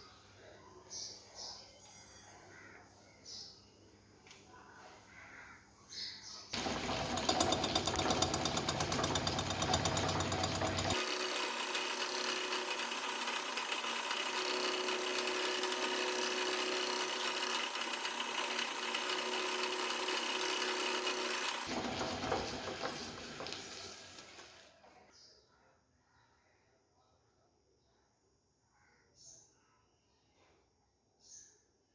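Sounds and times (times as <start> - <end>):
power tool running: 6.6 - 24.7.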